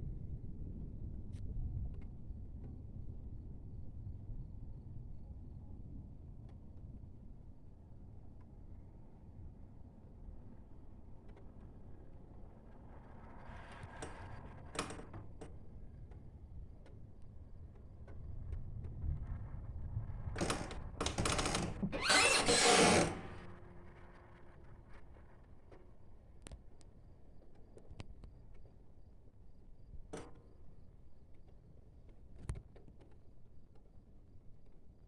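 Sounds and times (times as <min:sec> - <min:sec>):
window frame scraping and squeaking: 0:20.4 - 0:24.2.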